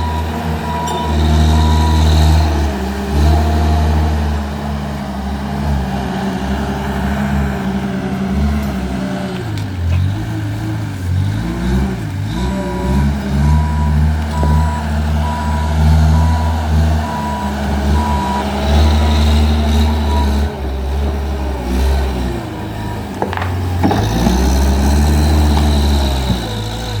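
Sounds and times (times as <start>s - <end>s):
reversing alarm beeping: 0.0s - 2.6s, 12.5s - 20.5s
diesel engine running: 0.0s - 27.0s.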